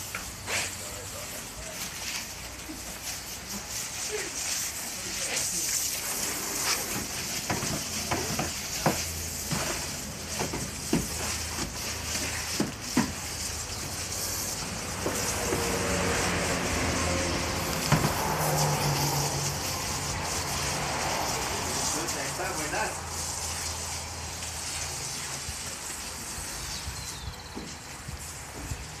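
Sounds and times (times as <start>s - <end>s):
washing machine water sloshing: 6.0s - 21.8s.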